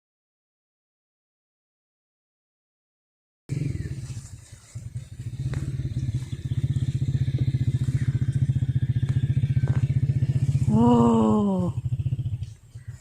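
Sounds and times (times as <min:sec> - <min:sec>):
small engine running: 0:03.5 - 0:13.0.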